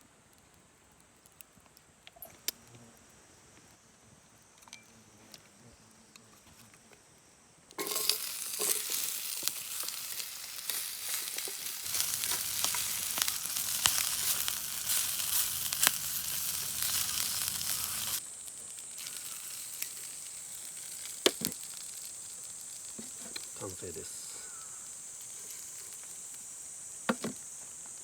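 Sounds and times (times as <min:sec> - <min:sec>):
food sizzling in a hot pan: 0:07.8 - 0:28.0.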